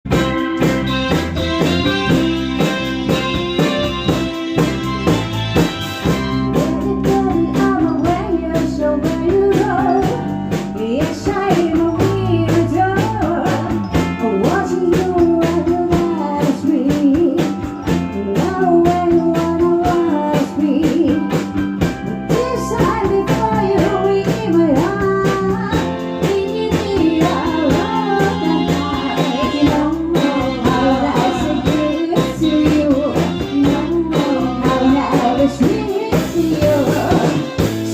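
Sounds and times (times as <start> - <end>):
band with guitar and drums: 0.0 - 37.9
woman singing: 6.4 - 21.4, 22.1 - 37.9.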